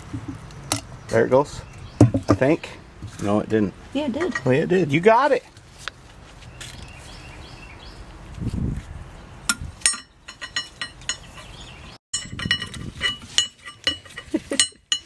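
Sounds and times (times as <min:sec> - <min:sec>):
metal clinking and tapping: 0:09.5 - 0:11.5, 0:12.2 - 0:15.0.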